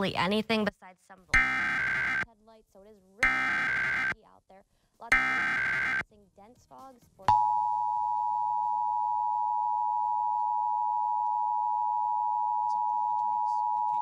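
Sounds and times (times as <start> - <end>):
two-tone alert tone: 1.4 - 2.2, 3.2 - 4.2, 5.1 - 6.0, 7.3 - 14.0.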